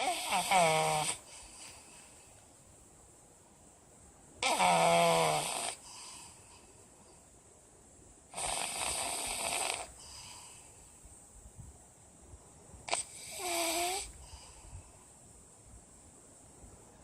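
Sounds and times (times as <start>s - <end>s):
dog snoring: 0.0s - 1.3s, 4.4s - 6.2s, 8.3s - 10.2s, 12.9s - 14.2s.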